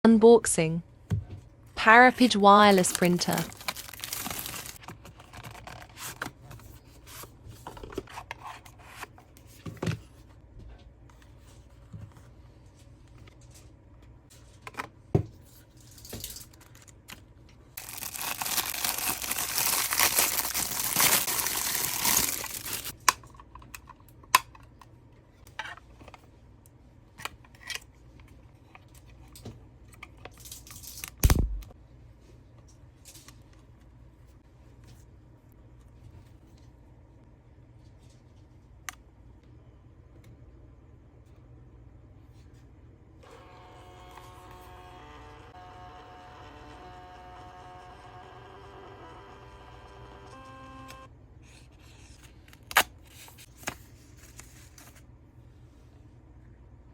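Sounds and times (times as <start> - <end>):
wrapping tearing and crinkling: 2.8 - 6.2, 17.8 - 23.0.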